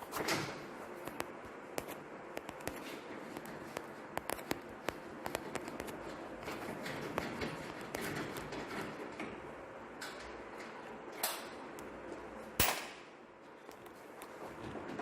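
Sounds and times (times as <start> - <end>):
sharp metal clank: 12.6 - 13.1.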